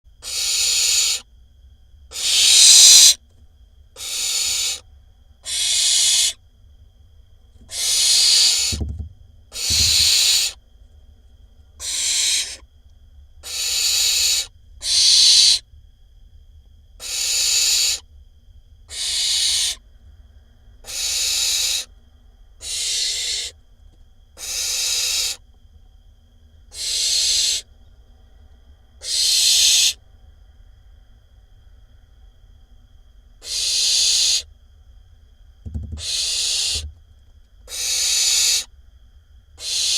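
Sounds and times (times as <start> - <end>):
owl chick hissing call: 0.2 - 1.3, 2.1 - 3.2, 4.0 - 4.8, 5.4 - 6.4, 7.6 - 8.9, 9.5 - 10.6, 11.8 - 12.7, 13.4 - 15.6, 17.0 - 18.1, 18.8 - 19.8, 20.8 - 21.9, 22.6 - 23.6, 24.4 - 25.4, 26.7 - 27.7, 29.0 - 30.0, 33.4 - 34.5, 36.0 - 36.9, 37.6 - 38.7, 39.6 - 39.9
dull low thuds: 8.7 - 10.4.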